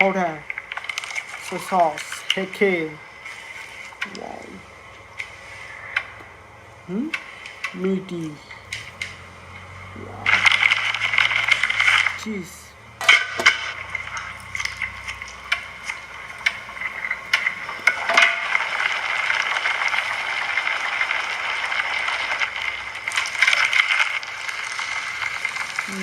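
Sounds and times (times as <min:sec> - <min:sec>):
steady hiss: 0:00.0 - 0:26.0.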